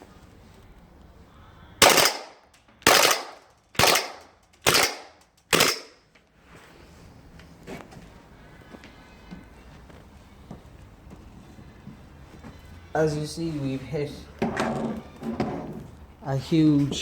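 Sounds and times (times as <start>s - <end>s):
airsoft pistol firing bursts: 1.8s - 6.0s.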